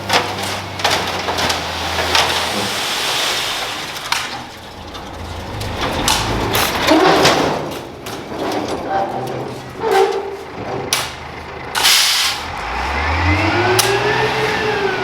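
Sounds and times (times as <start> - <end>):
diesel engine running low: 0.0 - 15.0
clunks and knocks: 4.0 - 11.9
dirt scraping: 4.3 - 10.9.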